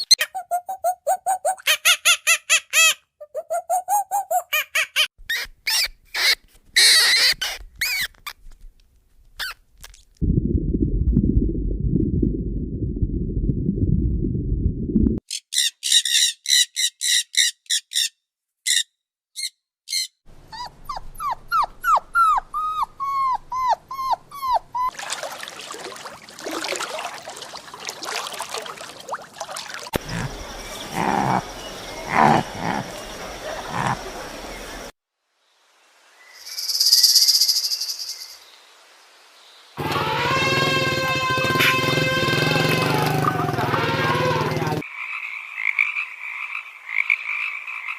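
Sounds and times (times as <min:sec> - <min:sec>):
short squeaky animal calls: 0:04.9 - 0:08.4
animal yips and whimpers: 0:20.5 - 0:25.0
high animal chirps: 0:30.0 - 0:34.0.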